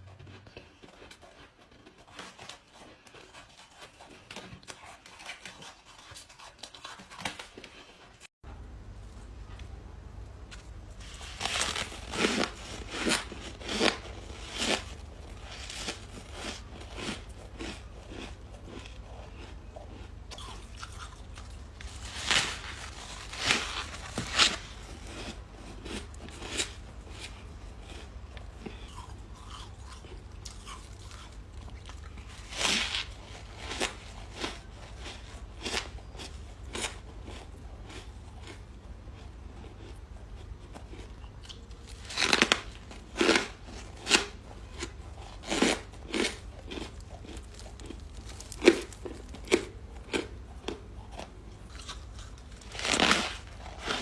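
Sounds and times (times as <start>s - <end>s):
person crunching ice: 10.9s - 38.6s, 41.5s - 54.0s.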